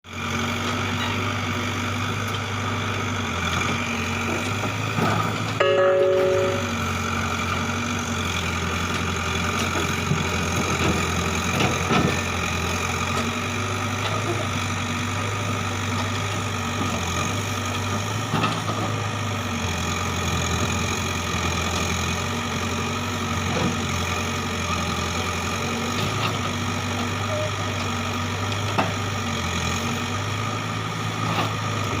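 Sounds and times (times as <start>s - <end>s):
diesel engine running: 0.0s - 32.0s
short tone: 5.6s - 7.0s.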